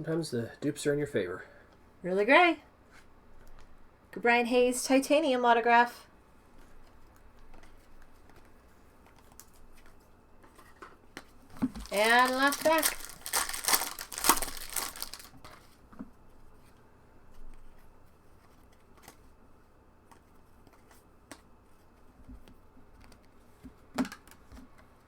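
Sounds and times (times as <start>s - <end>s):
cards being handled: 6.6s - 15.8s, 17.5s - 19.4s, 20.0s - 25.0s
wrapper tearing and crinkling: 11.5s - 15.5s.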